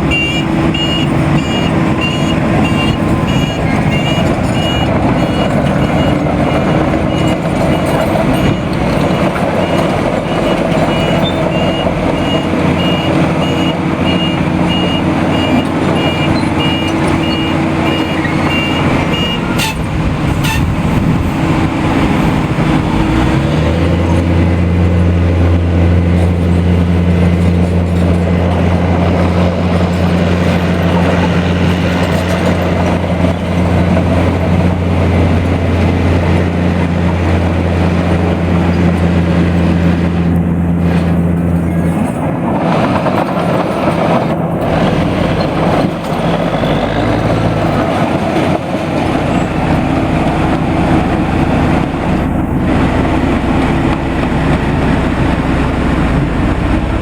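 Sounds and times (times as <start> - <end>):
reversing alarm beeping: 0.0 - 19.9
dump truck diesel engine: 0.0 - 57.0.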